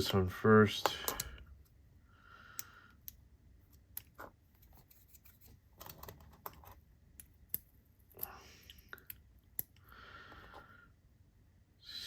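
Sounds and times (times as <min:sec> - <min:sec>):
small parts clicking and tapping: 0:00.7 - 0:01.8, 0:02.5 - 0:10.6.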